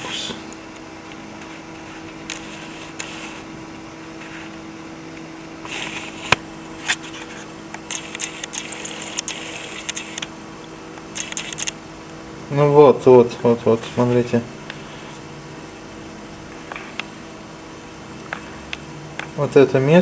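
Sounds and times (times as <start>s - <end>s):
low electrical hum: 0.0s - 20.0s
sharp click: 7.7s - 10.3s, 11.2s - 11.8s.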